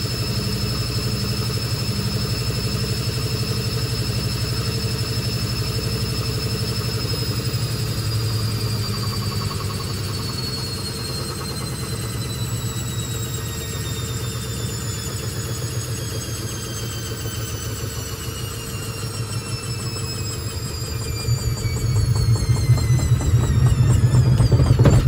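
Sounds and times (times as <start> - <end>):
washing machine motor whining: 0.0 - 25.0
washing machine drum rumbling: 20.6 - 25.0.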